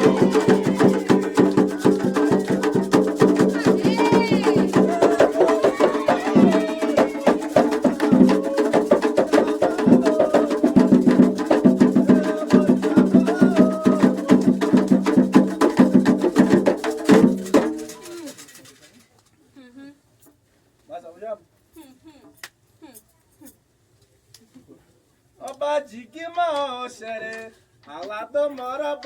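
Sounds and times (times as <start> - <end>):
voices singing: 0.0 - 17.2
hand drums and percussion: 0.0 - 18.9.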